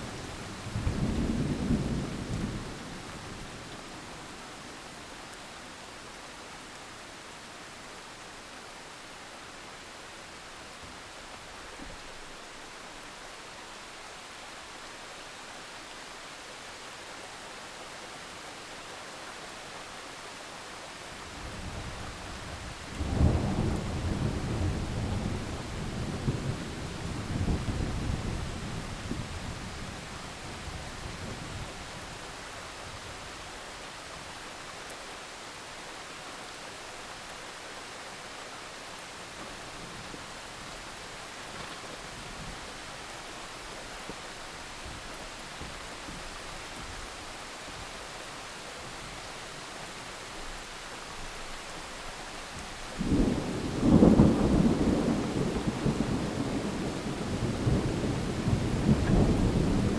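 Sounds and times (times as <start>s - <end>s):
steady rain: 0.0s - 59.9s
thunder crack and rumble: 0.5s - 3.1s, 21.5s - 29.9s, 53.0s - 59.9s.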